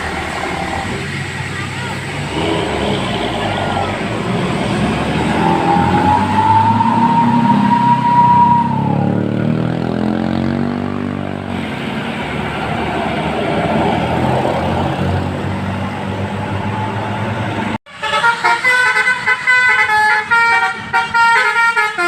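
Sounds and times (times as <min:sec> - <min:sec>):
bus engine passing: 0:00.0 - 0:21.2
road vehicle noise: 0:00.0 - 0:22.0
bus musical horn: 0:02.4 - 0:08.9, 0:17.9 - 0:22.0.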